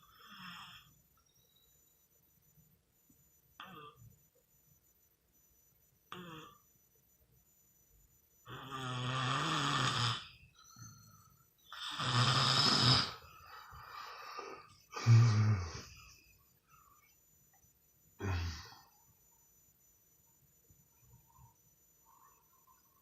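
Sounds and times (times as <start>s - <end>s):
person snoring: 8.5s - 13.2s, 14.0s - 16.0s, 18.2s - 18.9s
soft breathing: 13.2s - 17.2s.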